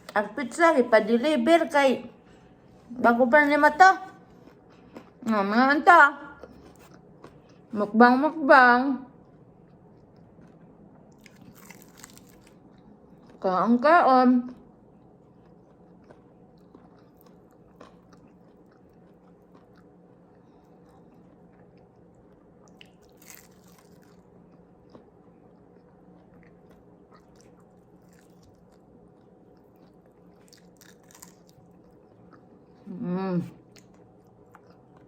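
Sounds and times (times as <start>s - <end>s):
low steady hum: 0.0s - 35.0s
chewing and crunching: 4.1s - 5.4s, 6.2s - 7.8s, 9.1s - 13.5s, 14.4s - 32.9s, 33.6s - 35.0s.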